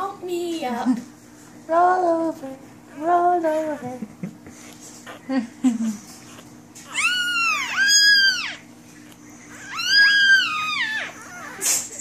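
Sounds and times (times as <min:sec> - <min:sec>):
puppies crying: 0:02.9 - 0:12.0.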